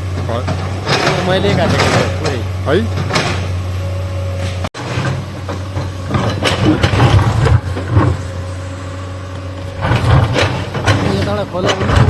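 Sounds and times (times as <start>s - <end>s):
excavator diesel engine running: 0.0s - 12.0s
knocks and rattles: 0.1s - 3.6s, 4.5s - 8.2s, 9.6s - 12.0s.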